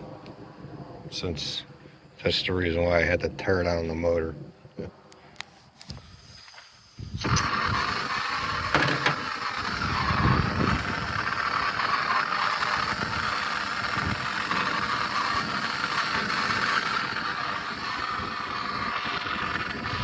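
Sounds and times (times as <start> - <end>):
gas torch hissing: 5.9 - 20.0.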